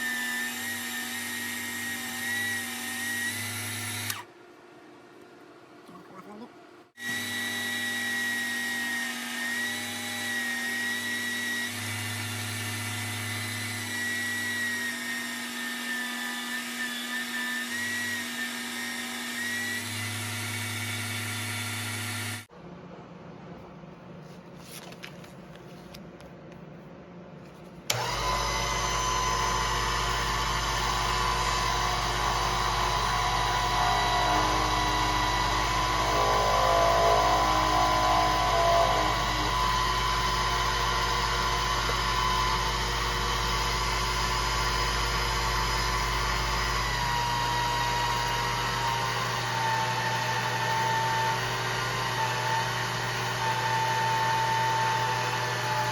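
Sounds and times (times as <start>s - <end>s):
power tool motor whining: 0.0s - 4.3s, 7.0s - 22.4s, 27.9s - 55.9s
machine humming: 27.9s - 55.9s.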